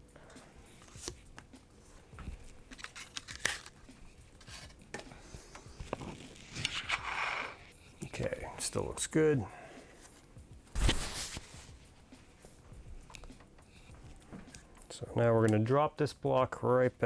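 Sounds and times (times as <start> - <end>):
papery rustle: 2.4 - 4.8, 5.8 - 7.7, 10.7 - 11.6.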